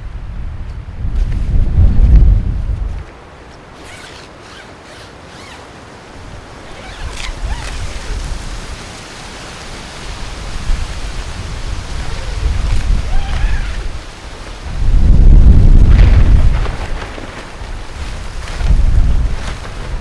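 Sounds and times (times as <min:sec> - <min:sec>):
wind buffeting microphone: 0:00.0 - 0:04.6, 0:06.0 - 0:20.0.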